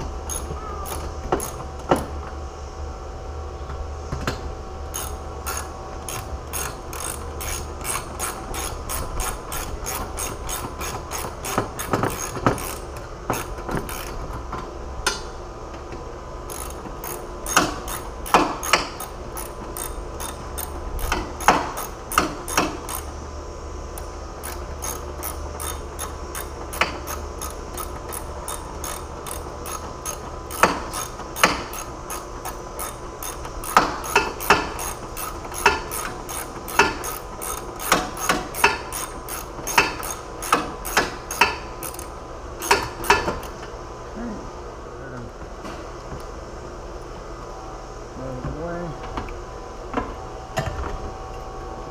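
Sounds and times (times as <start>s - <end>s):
ratchet wrench clicking: 0.3s - 1.6s, 4.9s - 14.2s, 16.5s - 23.1s, 24.0s - 43.5s.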